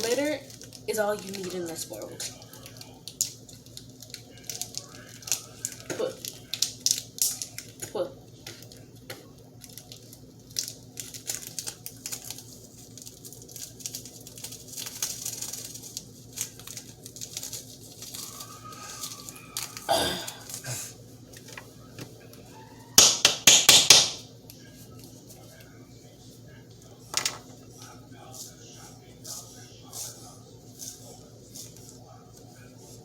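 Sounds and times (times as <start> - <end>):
crinkling and scraping of plastic: 9.6 - 20.6.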